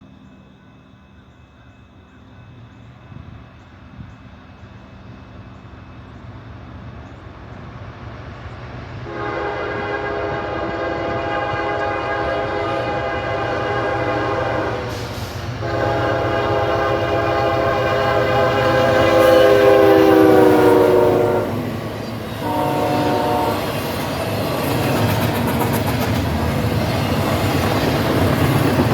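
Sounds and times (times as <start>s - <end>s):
train rumbling: 0.0s - 28.9s
locomotive air horn blasts: 9.1s - 24.0s.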